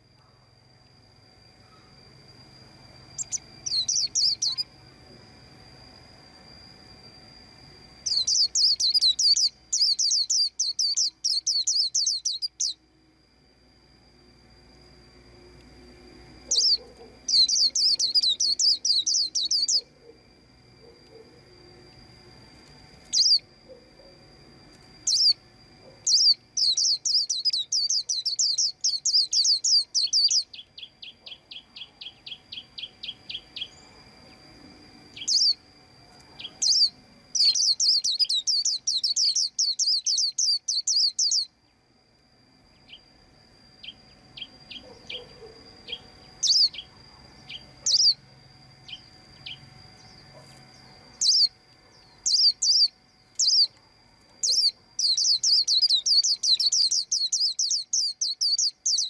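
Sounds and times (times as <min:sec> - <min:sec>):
bird chirping: 0:03.1 - 0:04.7, 0:08.0 - 0:12.8, 0:16.4 - 0:20.2, 0:23.0 - 0:24.1, 0:25.0 - 0:34.4, 0:35.1 - 0:35.6, 0:36.4 - 0:41.8, 0:43.8 - 0:48.2, 0:48.8 - 0:53.8, 0:54.4 - 0:59.0.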